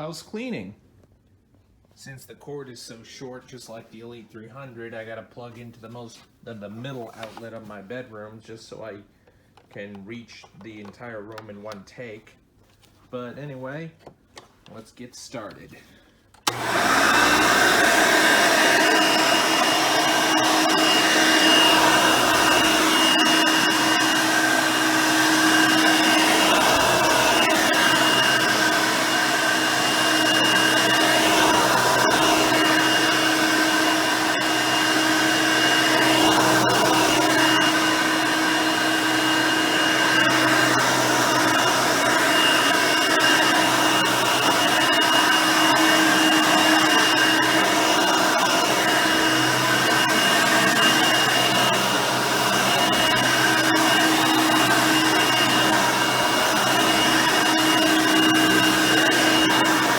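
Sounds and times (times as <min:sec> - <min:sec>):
vacuum cleaner whine: 0:16.4 - 0:59.9.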